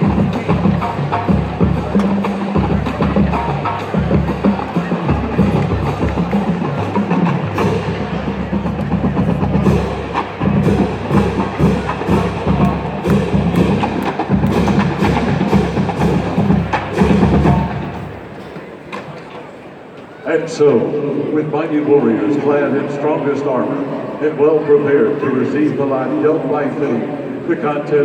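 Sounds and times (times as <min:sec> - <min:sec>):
marching band playing: 0:00.0 - 0:18.8
clicking drumline strokes: 0:00.0 - 0:19.4.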